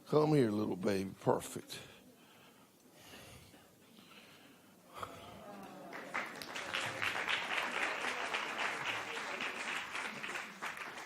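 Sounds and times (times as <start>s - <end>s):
congregation applauding: 5.6s - 11.0s.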